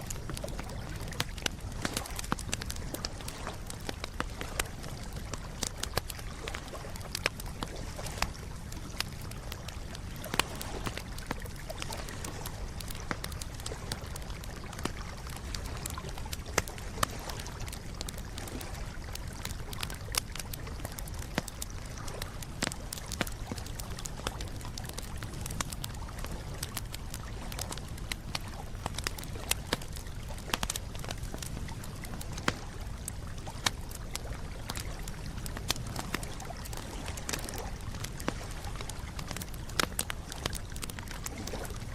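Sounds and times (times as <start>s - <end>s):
campfire crackling: 0.0s - 41.9s.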